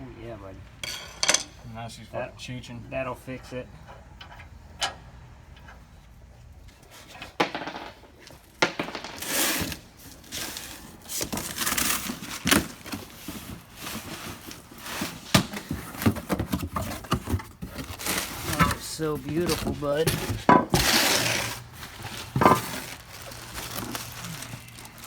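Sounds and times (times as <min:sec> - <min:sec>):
metal knocks and clanks: 0:00.8 - 0:01.6
metal scraping and rattling: 0:06.7 - 0:25.0.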